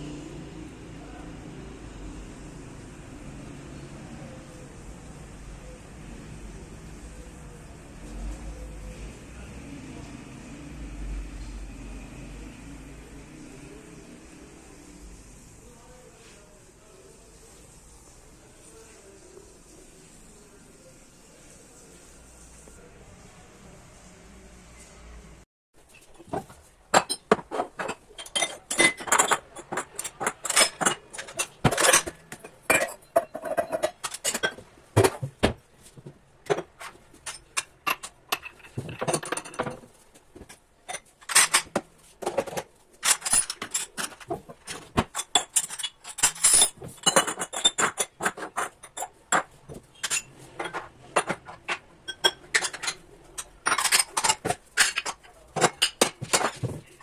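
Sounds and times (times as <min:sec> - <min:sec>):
dishes and cutlery clinking: 0:25.9 - 0:57.0.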